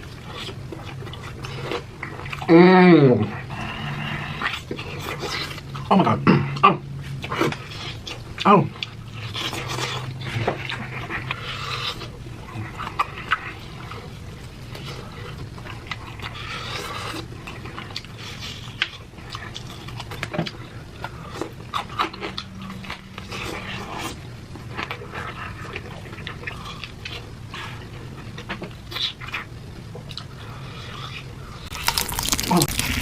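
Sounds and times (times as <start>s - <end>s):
heavy breathing: 3.2s - 4.6s
wet chewing and lip smacking: 6.5s - 33.0s.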